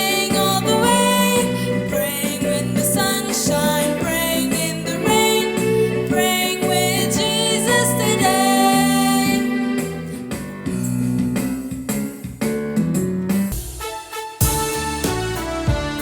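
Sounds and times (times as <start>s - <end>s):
person singing worship song: 0.0s - 10.4s
guitar: 0.0s - 13.5s
keyboard: 0.0s - 16.0s.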